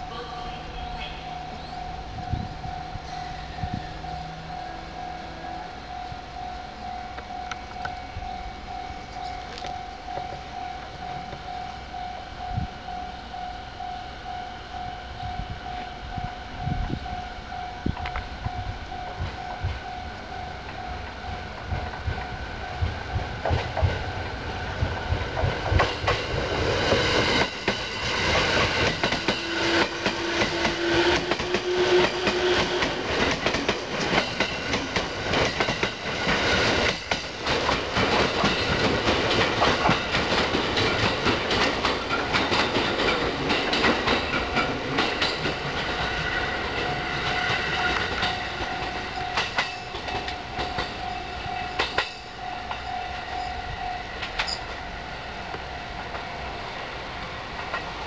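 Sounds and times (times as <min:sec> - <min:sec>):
steady train whine: 0:00.0 - 0:58.0
train wheels clattering: 0:21.7 - 0:54.8.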